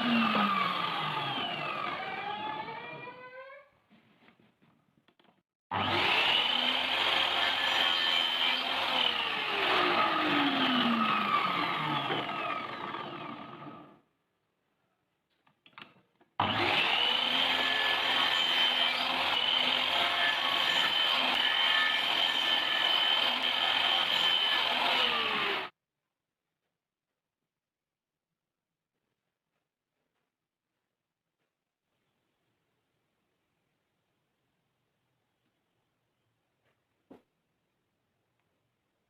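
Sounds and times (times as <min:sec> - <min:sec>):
power tool motor whine: 0:00.0 - 0:03.2, 0:05.7 - 0:14.0, 0:16.4 - 0:25.7.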